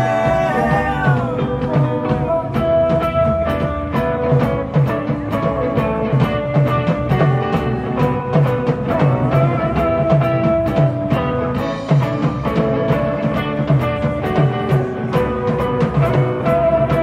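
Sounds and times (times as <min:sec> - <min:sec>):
rock band playing: 0:00.0 - 0:17.0
steady drum beat: 0:00.0 - 0:17.0
sustained guitar or keyboard notes: 0:00.0 - 0:17.0.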